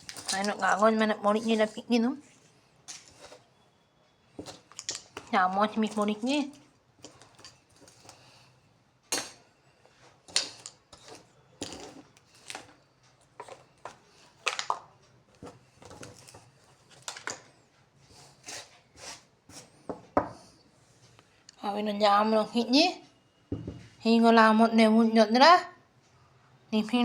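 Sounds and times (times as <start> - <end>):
small hard objects clattering: 0.0 - 1.9, 4.4 - 8.2, 10.2 - 17.5.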